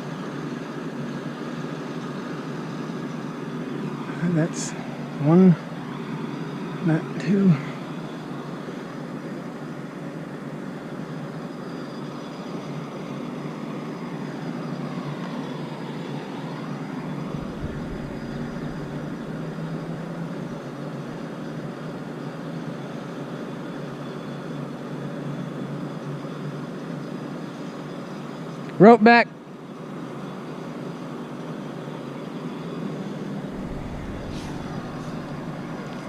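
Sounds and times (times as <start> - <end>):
engine drone: 0.0 - 29.2, 30.3 - 36.0
faint tone dipping in pitch: 17.0 - 21.2, 33.4 - 36.0.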